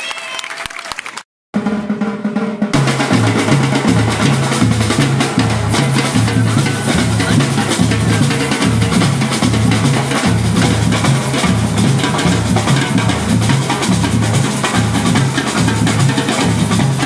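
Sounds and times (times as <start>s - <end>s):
music with drums and bass: 1.6s - 17.0s.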